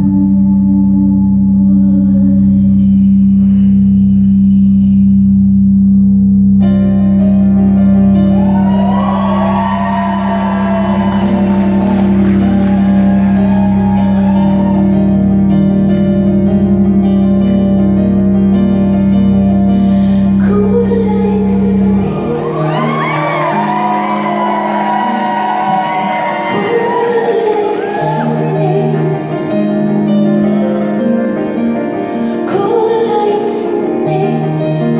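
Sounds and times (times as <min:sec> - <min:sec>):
loud low drone: 0:00.0 - 0:22.9
sliding pitches: 0:04.2 - 0:34.9.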